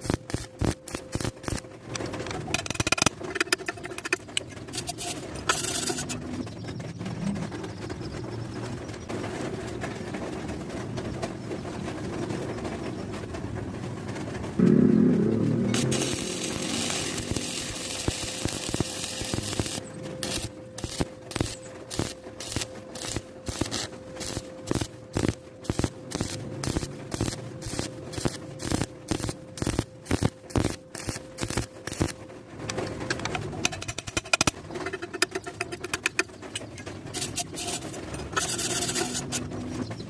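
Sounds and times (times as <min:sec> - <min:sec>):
welding arc crackling: 0:00.0 - 0:06.2, 0:14.6 - 0:40.0
steady hum: 0:00.0 - 0:13.4, 0:14.1 - 0:39.6.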